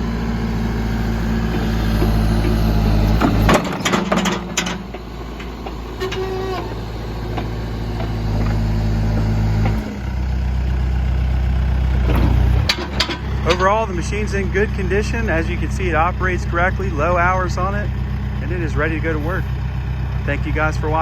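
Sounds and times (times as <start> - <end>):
diesel engine running: 0.0 - 21.0
machine clanks and knocks: 1.5 - 6.7, 12.0 - 13.9.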